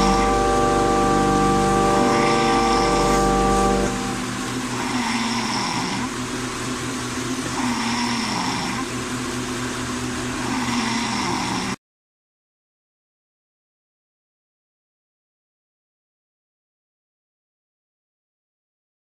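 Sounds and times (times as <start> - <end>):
person snoring: 2.0 - 6.1, 7.6 - 8.9, 10.4 - 11.8.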